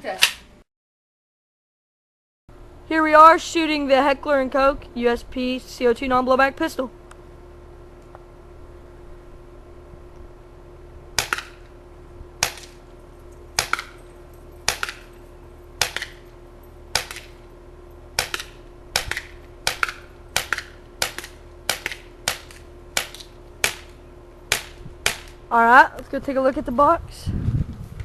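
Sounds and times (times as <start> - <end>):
airsoft pistol shots popping: 11.2 - 11.7, 12.4 - 12.8, 13.6 - 14.0, 14.7 - 15.1, 15.8 - 16.2, 16.9 - 17.4, 18.2 - 25.4.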